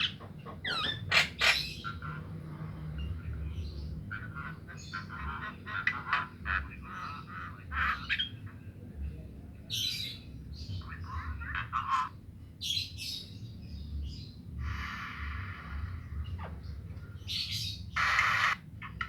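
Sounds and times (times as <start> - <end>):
myna squawking chatter: 0.0 - 2.2, 14.6 - 19.0
faint low hum: 13.4 - 19.0.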